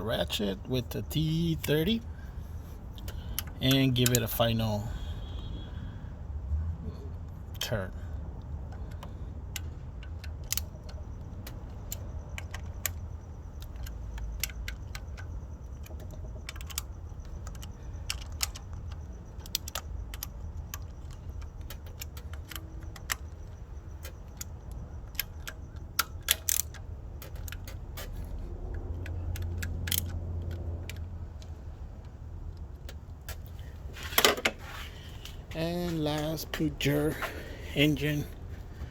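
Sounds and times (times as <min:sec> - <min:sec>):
steady low hum: 0:00.0 - 0:38.9
ratchet clicking: 0:08.7 - 0:33.6.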